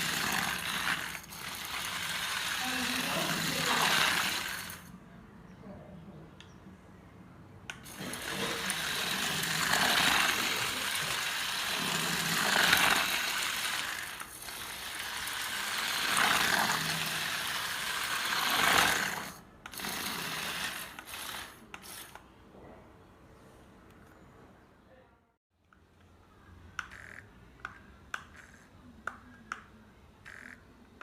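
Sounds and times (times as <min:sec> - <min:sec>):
small electric motors whirring: 0:00.0 - 0:04.9, 0:07.7 - 0:22.2.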